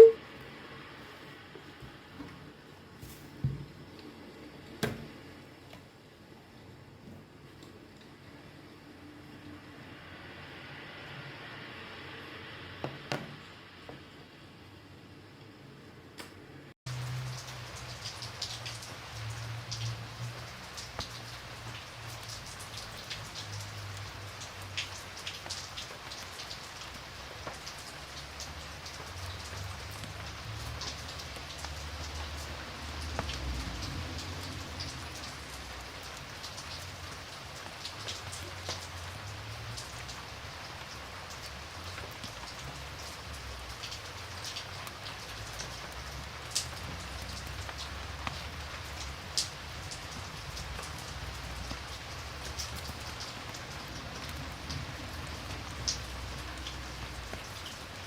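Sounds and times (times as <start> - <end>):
rain hissing: 0.0 - 14.6, 16.9 - 58.0
raindrop clicks: 16.2 - 58.0.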